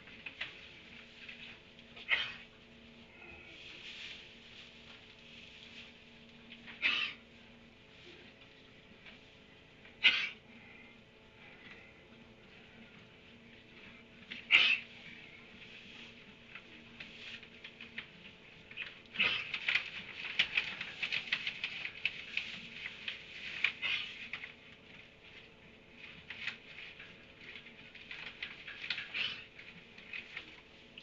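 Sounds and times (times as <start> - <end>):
animals scuffling: 0.0 - 31.0.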